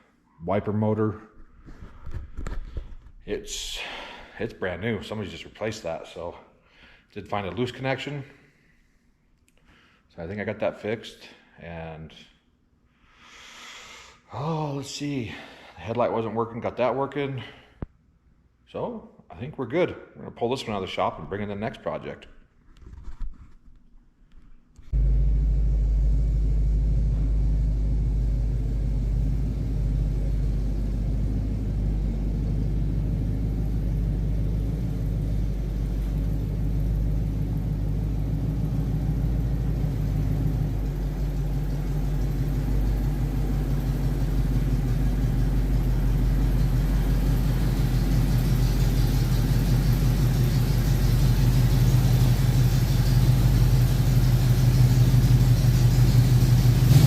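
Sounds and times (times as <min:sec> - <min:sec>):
vehicle engine running: 0:24.9 - 0:57.0.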